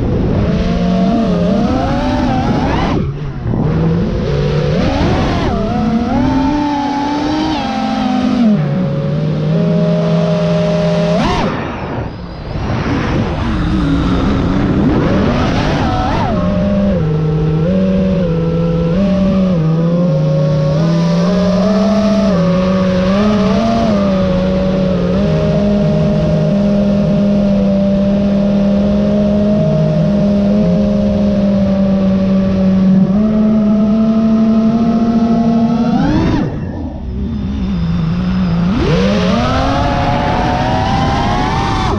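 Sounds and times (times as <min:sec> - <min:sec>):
quadcopter motors whining: 0:00.1 - 0:11.9, 0:34.4 - 0:41.9.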